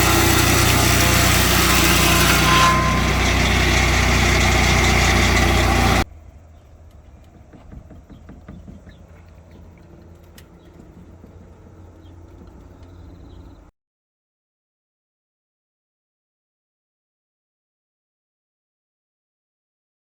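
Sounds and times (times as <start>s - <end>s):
sawmill engine running hard: 0.0s - 6.1s
low engine hum: 0.0s - 13.7s.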